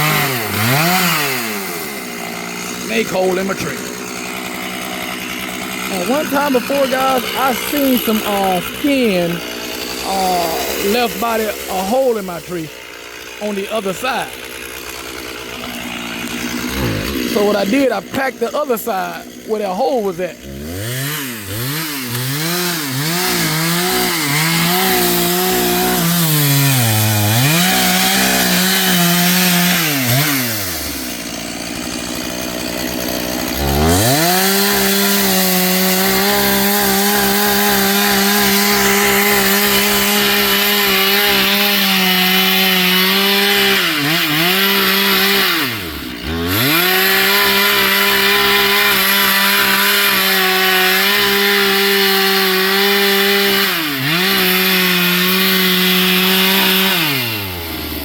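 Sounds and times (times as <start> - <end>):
chainsaw engine revving: 0.0 - 58.0.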